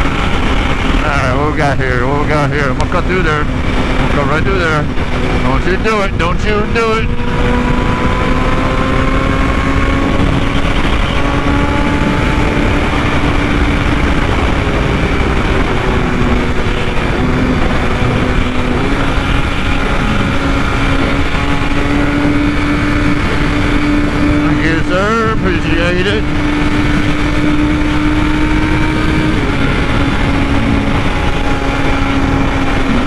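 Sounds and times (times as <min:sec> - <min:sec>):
motorcycle engine at high revs: 0:00.0 - 0:33.0
wind rush: 0:00.0 - 0:33.0.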